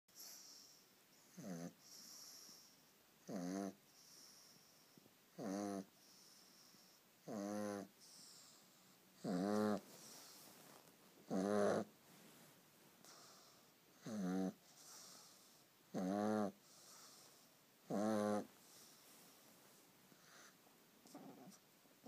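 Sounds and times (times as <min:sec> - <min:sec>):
soft hissing breath: 0:00.1 - 0:03.0, 0:03.7 - 0:05.2, 0:05.8 - 0:07.2, 0:07.8 - 0:15.9, 0:16.5 - 0:22.0
dog snoring: 0:00.2 - 0:04.6, 0:05.3 - 0:08.6, 0:09.2 - 0:10.4, 0:11.2 - 0:11.9, 0:13.0 - 0:18.9, 0:20.1 - 0:21.6.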